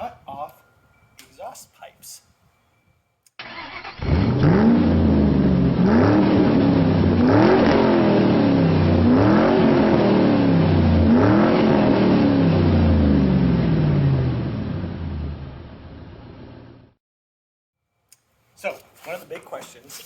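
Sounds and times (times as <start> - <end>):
vehicle engine revving: 3.5 - 16.8.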